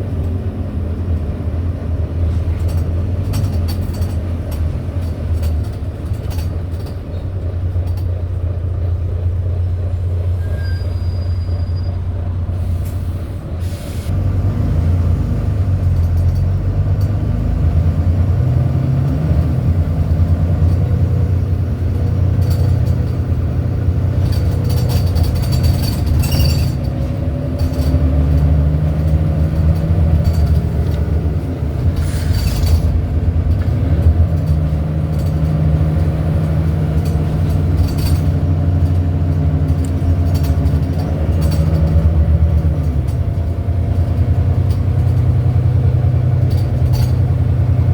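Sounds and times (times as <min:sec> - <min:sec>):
bus diesel engine running: 0:00.0 - 0:47.9
short high squeaks and rattles: 0:10.2 - 0:13.9, 0:22.0 - 0:43.0.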